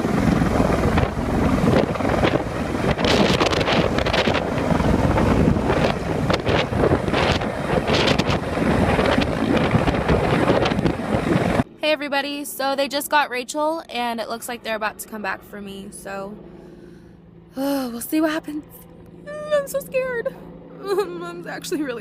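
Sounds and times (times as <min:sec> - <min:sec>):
wind buffeting microphone: 0:00.0 - 0:11.7
helicopter rotor beating: 0:00.0 - 0:22.0.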